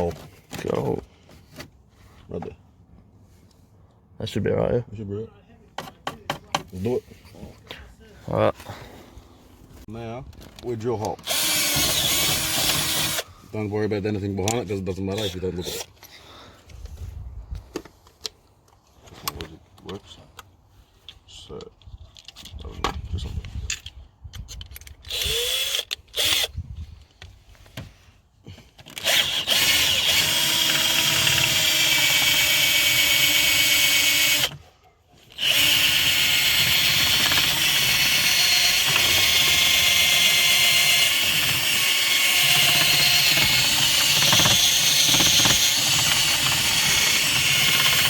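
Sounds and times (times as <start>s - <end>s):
power drill running: 11.2s - 13.3s, 25.1s - 26.5s, 29.0s - 34.6s, 35.3s - 48.0s.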